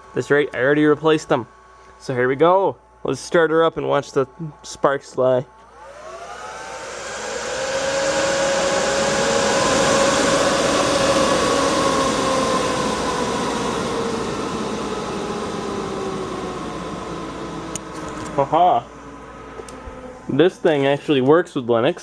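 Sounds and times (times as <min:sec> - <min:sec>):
server cooling fans whining: 0:00.0 - 0:22.0.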